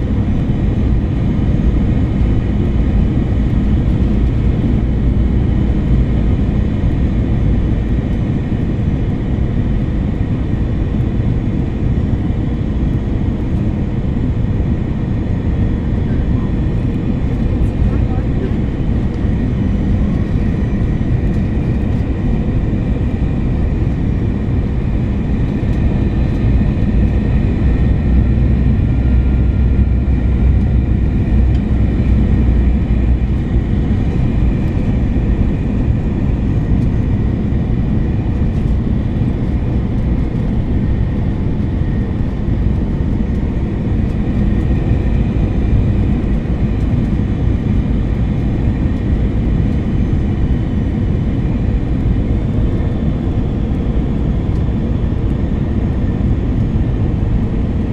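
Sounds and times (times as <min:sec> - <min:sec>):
airliner engines and airflow rumble: 0:00.0 - 0:57.9
faint high engine whine: 0:00.0 - 0:57.9.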